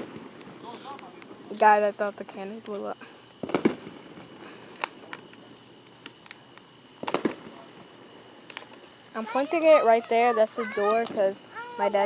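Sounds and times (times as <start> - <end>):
firework bangs and cracks: 0.0 - 1.8, 2.6 - 12.0.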